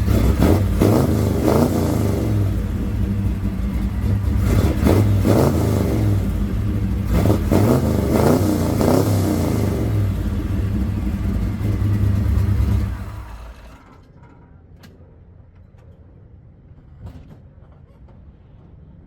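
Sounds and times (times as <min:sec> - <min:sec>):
engine revving: 0:00.0 - 0:13.9
car engine idling: 0:00.0 - 0:14.2.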